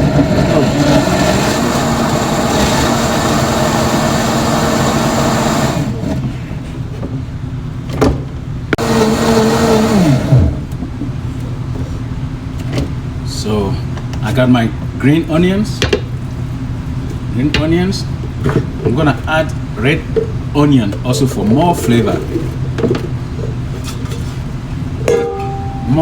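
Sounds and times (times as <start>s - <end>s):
blender motor running: 0.0s - 6.1s, 8.8s - 10.7s.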